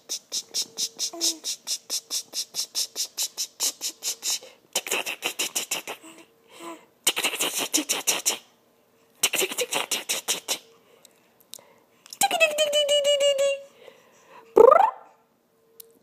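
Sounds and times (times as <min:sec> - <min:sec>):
rhythmic mouth clicking: 0:00.0 - 0:06.2, 0:07.1 - 0:08.5, 0:09.2 - 0:12.2.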